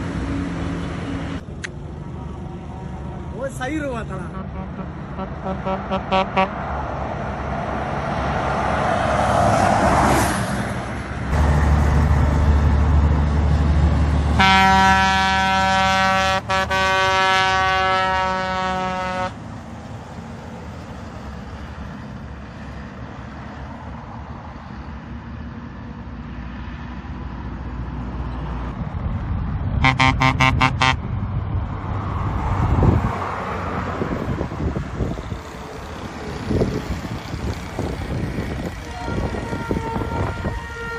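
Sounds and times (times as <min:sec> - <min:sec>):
bus engine rumble: 0:00.0 - 0:40.9
traffic noise: 0:00.0 - 0:40.9
bus horn blast: 0:04.2 - 0:06.6, 0:14.4 - 0:19.4, 0:29.8 - 0:31.1, 0:38.8 - 0:40.9
short horn toots: 0:14.4 - 0:19.3, 0:29.8 - 0:31.0.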